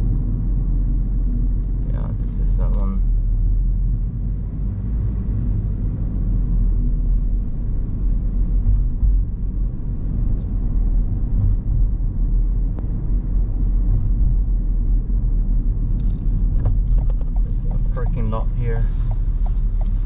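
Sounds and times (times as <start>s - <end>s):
car engine rumble: 0.0s - 20.0s
road noise: 0.0s - 20.0s.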